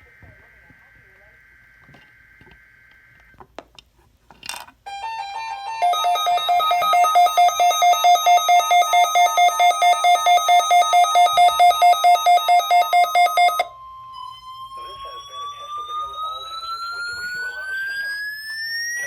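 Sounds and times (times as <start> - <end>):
pulsing electronic alarm beeping: 0.0 - 3.3, 4.9 - 19.0
steady electronic tone: 5.0 - 19.0
stepped beeps: 5.8 - 19.0.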